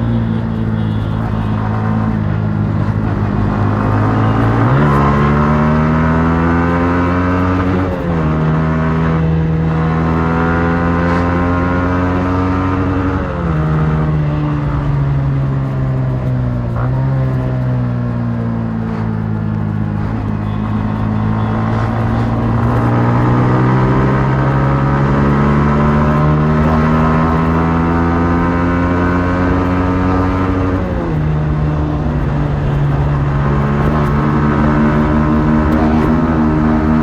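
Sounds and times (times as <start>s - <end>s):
motorcycle engine revving: 0.0s - 37.0s.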